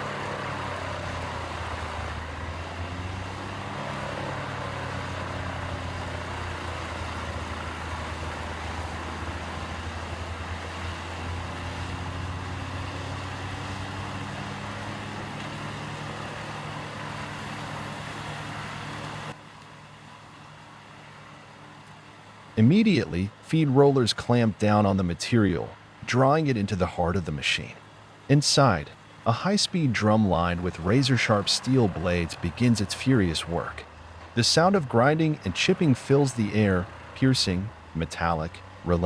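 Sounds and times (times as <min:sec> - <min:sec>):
wood chipper diesel engine running: 0:00.0 - 0:39.0
broad rushing noise: 0:22.5 - 0:39.0.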